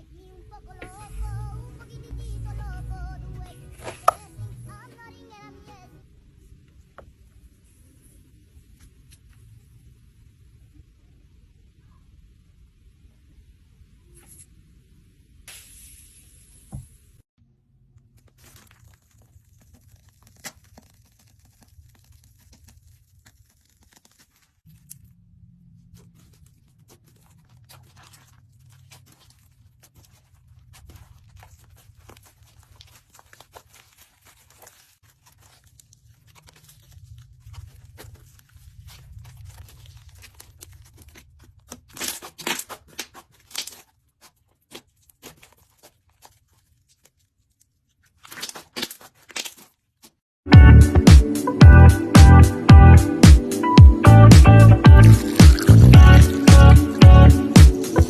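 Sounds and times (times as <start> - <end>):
dense crackling and tearing: 17.8 - 50.2, 54.6 - 58.0.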